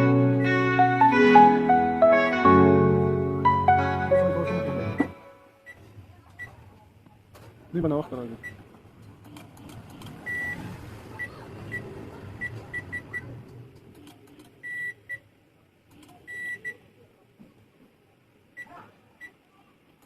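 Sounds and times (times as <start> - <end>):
microwave keypad beeps: 16.3 - 16.8.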